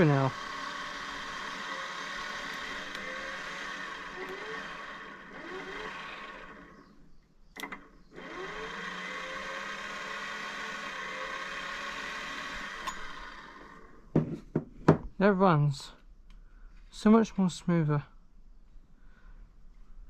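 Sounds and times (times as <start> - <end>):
blender motor whining: 0.0 - 6.9, 7.6 - 14.0
blender clicks: 1.6 - 6.4, 7.6 - 13.8.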